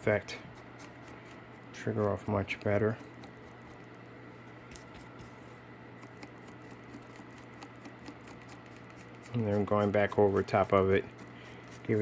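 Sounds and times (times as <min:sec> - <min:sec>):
paintbrush scratching on cardboard: 0:06.0 - 0:12.0.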